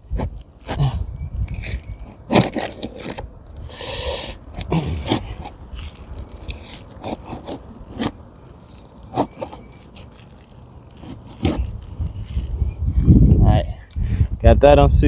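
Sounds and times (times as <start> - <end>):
shingle clicks and scrapes: 0.0 - 12.9
tearing scrape: 1.5 - 12.6.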